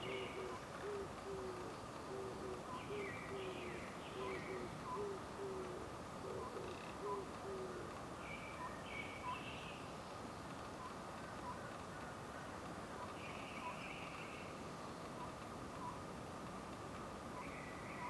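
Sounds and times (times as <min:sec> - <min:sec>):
owl hooting: 0:00.0 - 0:07.9
small birds calling: 0:00.0 - 0:10.0, 0:10.8 - 0:16.1, 0:17.3 - 0:18.0.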